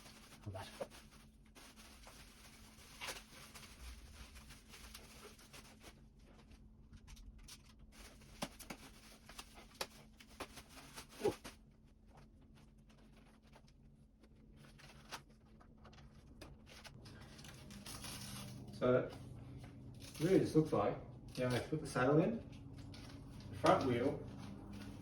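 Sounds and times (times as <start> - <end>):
packaging rustling: 0.0 - 18.7.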